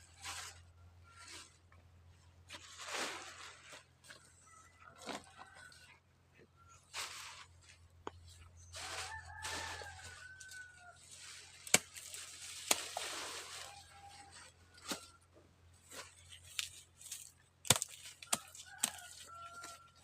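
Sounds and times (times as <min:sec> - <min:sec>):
rustling and tearing of husks: 0:08.8 - 0:15.2, 0:15.8 - 0:20.0
corn ears snapping off stalks: 0:11.6 - 0:13.5, 0:16.4 - 0:19.1.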